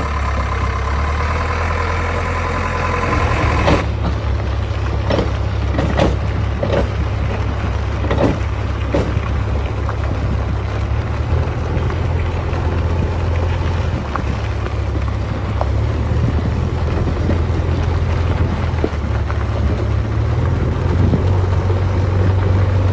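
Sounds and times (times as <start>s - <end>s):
machinery whine: 0.0s - 6.2s
diesel machinery engine running: 0.0s - 22.9s
short knocks and clunks: 2.8s - 10.0s.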